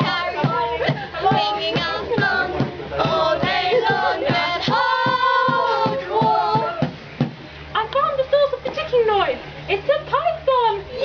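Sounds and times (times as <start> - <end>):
sped-up voices singing chant: 0.0 - 6.9.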